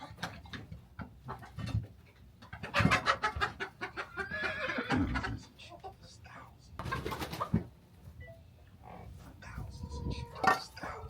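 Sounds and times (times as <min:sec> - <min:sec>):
chickens clucking: 0:00.0 - 0:11.0
chickens squawking: 0:02.4 - 0:06.2, 0:06.8 - 0:07.8, 0:08.8 - 0:11.0.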